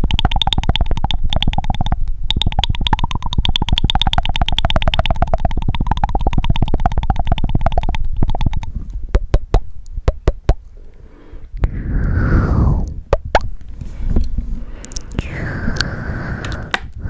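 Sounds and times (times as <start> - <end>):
sharp tongue clicks: 0.0 - 13.5, 14.8 - 17.0
wet tongue clicks: 0.0 - 13.5, 14.8 - 17.0
breathy mouth sound: 10.6 - 13.2, 14.5 - 17.0.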